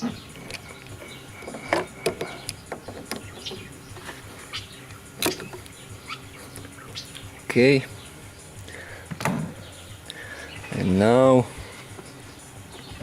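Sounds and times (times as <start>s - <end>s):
tools and parts clicking: 0.4s - 4.2s.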